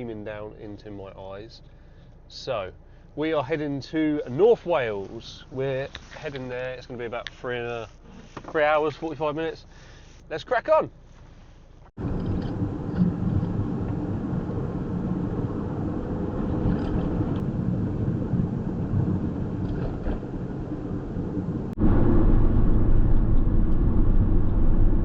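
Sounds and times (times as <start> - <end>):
vehicle engine and road rumble: 0.0 - 25.0
deep rumble: 12.0 - 25.0.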